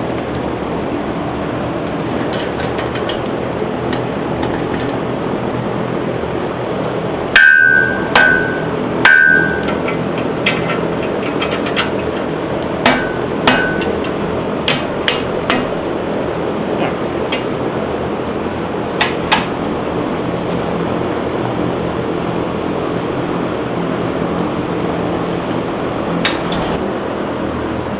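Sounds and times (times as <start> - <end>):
steady background hum: 0.0 - 27.9
metal tools clanking on metal: 1.8 - 5.1, 7.4 - 15.8.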